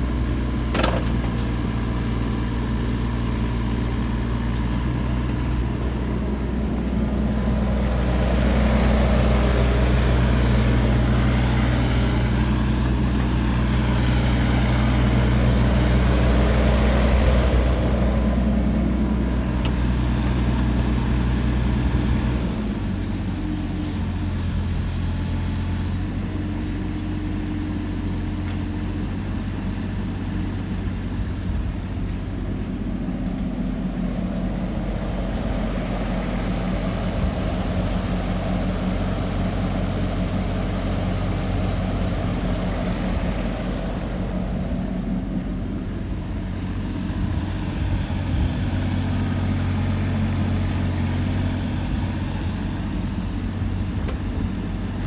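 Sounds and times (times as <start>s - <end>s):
excavator diesel engine running: 0.0s - 55.0s
click: 19.6s - 19.8s.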